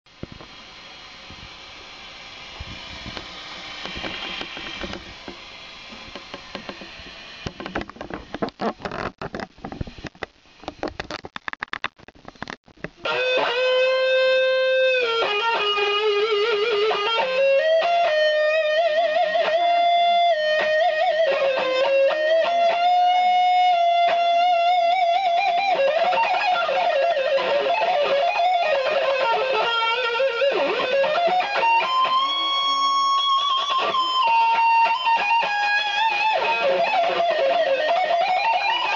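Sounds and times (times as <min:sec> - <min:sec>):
electric guitar scratching strokes: 0:00.2 - 0:38.9
overdriven electric guitar lead melody: 0:13.0 - 0:38.9.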